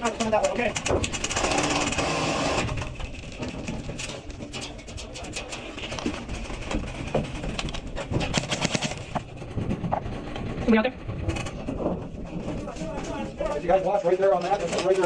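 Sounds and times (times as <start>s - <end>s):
wind rumble on microphone: 2.6s - 14.0s
airsoft guns popping: 7.5s - 9.3s.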